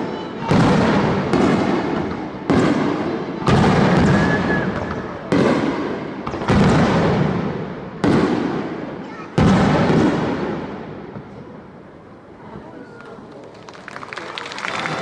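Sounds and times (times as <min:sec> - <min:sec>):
firework shells booming: 0:00.4 - 0:11.4.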